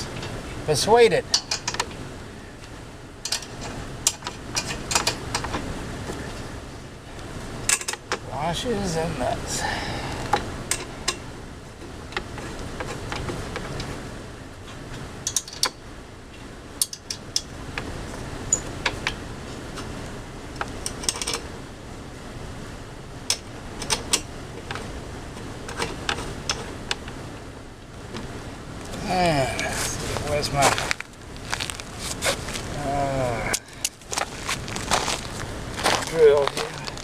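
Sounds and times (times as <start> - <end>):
metal washers and nuts clinking: 15.2 - 15.7.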